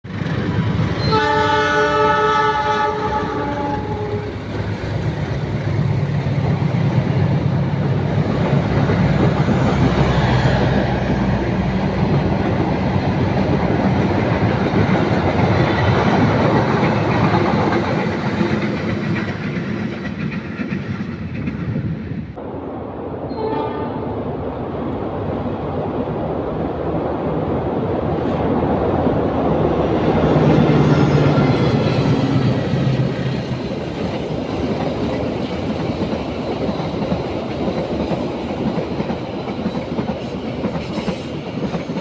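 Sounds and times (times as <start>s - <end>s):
train wheels rumbling on rails: 0.0s - 22.5s, 23.2s - 42.0s
train horn: 1.0s - 4.4s, 23.3s - 24.2s.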